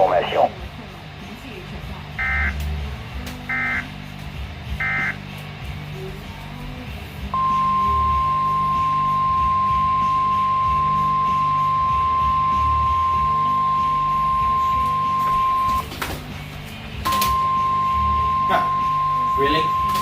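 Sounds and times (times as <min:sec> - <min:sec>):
loud high alarm beep: 0:04.8 - 0:05.2, 0:07.4 - 0:15.8, 0:17.1 - 0:20.0.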